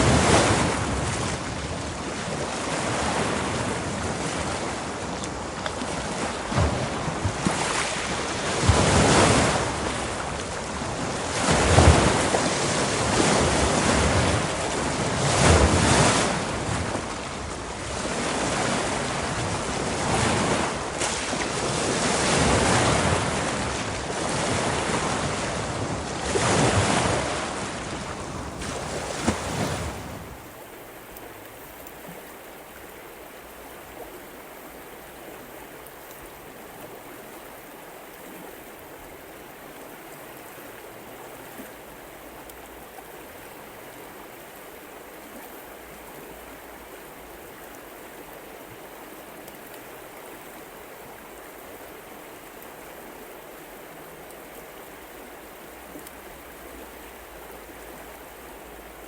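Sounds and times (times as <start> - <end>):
waves breaking: 0.0 - 37.1
wind: 0.0 - 59.0.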